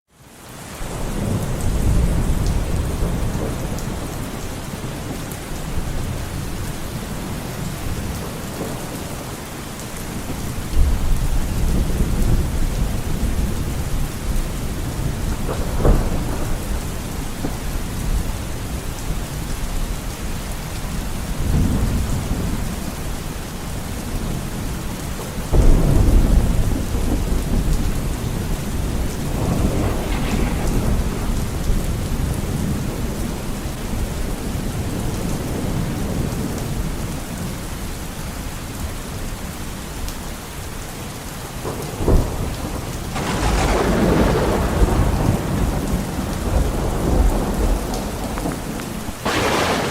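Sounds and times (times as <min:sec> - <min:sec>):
heavy rain: 0:00.1 - 0:49.9
thunder rumbling: 0:00.8 - 0:37.6, 0:41.6 - 0:49.9
sharp thunder crack: 0:25.5 - 0:33.8, 0:41.6 - 0:49.9.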